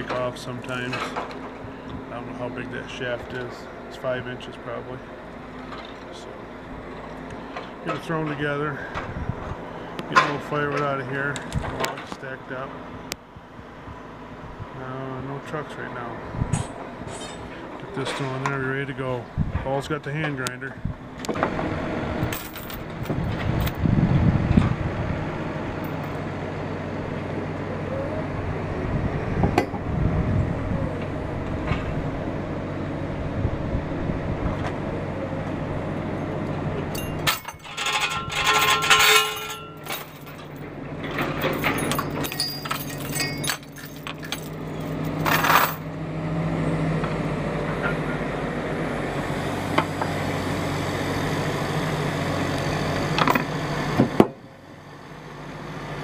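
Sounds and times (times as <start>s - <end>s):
metal clinks and clanks: 22.3s - 23.8s, 25.8s - 26.2s, 36.9s - 45.9s
harsh ringing metal noise: 36.9s - 45.8s.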